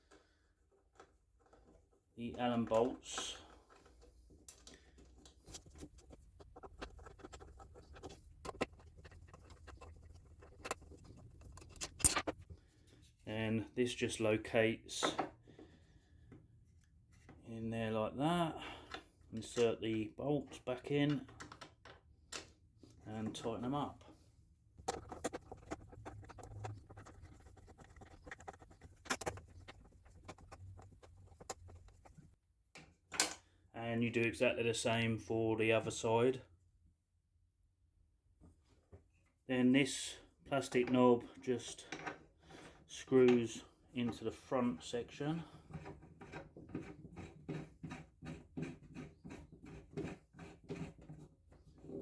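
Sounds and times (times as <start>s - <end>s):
allen key metallic clicks and scrapes: 5.5s - 12.4s.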